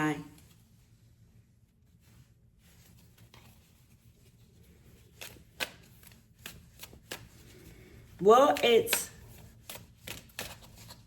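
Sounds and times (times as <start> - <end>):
cards being shuffled: 2.8 - 7.8, 8.5 - 11.0.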